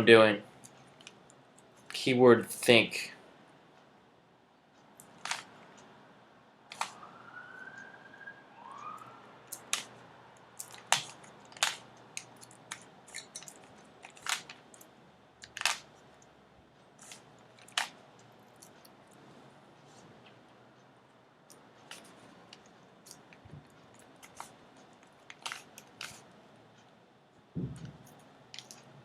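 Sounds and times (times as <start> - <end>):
puzzle cube plastic clicks: 5.0 - 5.5, 10.6 - 15.9, 25.2 - 26.3
faint whistling tones: 6.9 - 9.3.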